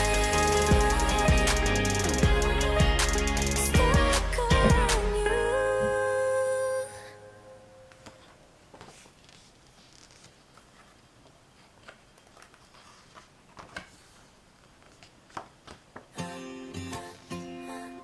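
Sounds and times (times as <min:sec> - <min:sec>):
music: 0:00.0 - 0:07.0, 0:16.2 - 0:18.0
paper and packaging rustling: 0:08.2 - 0:16.1.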